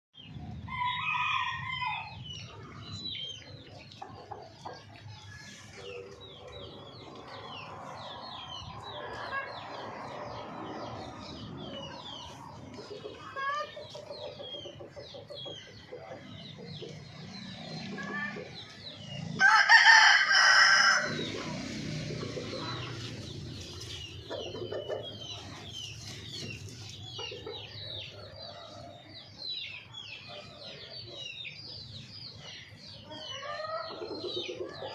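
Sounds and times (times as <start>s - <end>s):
chickens clucking: 1.6s - 34.9s
rooster crowing: 19.4s - 21.3s.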